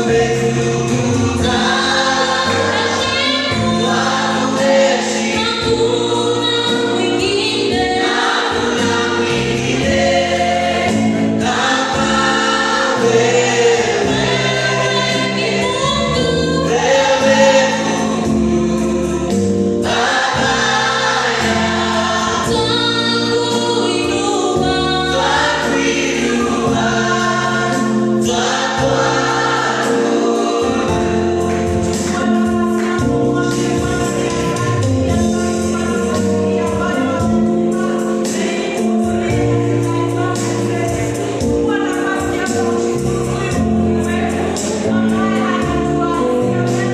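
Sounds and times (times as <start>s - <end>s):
choir singing praise song: 0.0s - 46.9s
instrumental backing with bass: 0.0s - 46.9s.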